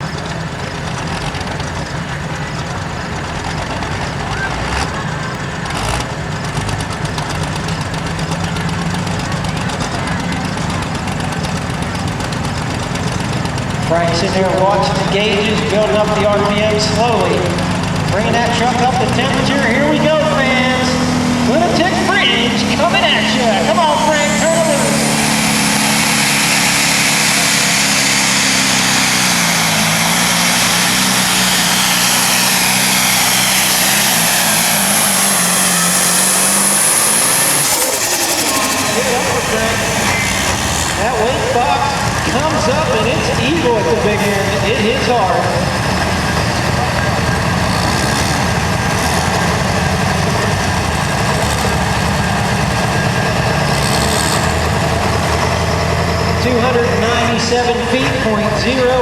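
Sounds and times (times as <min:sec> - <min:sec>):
diesel truck engine at full throttle: 0:00.0 - 0:59.0
high engine whistle: 0:13.8 - 0:45.5.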